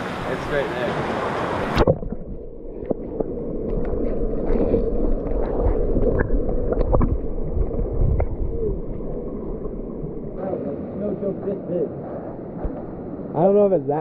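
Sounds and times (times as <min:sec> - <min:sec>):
muffled underwater rush: 0:00.0 - 0:14.0
clicks and pops: 0:05.2 - 0:08.5.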